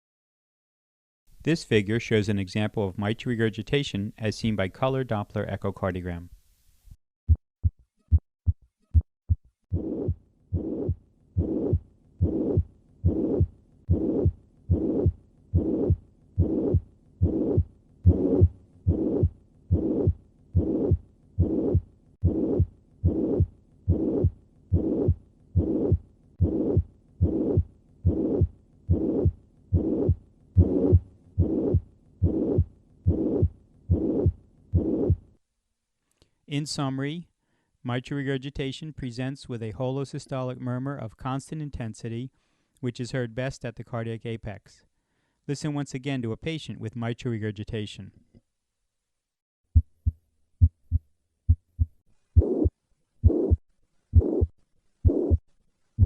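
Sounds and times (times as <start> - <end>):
heart murmur: 7.3 - 35.3, 49.8 - 53.6, 54.2 - 55.4
heartbeat lub-dub: 7.3 - 35.3, 49.8 - 53.6, 54.2 - 55.4.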